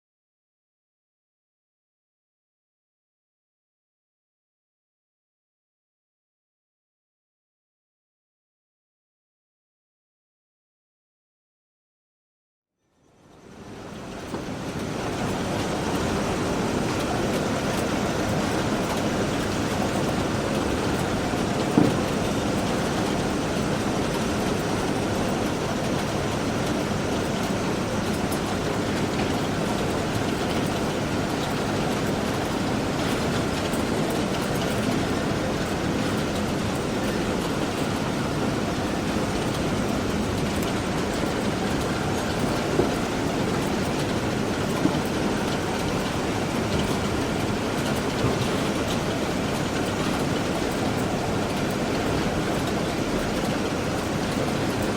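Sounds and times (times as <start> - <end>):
letter-sorting machine running: 13.7 - 54.9.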